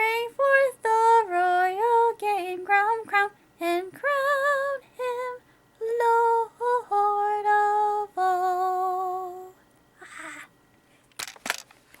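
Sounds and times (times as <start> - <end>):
woman singing a cappella: 0.0 - 9.6.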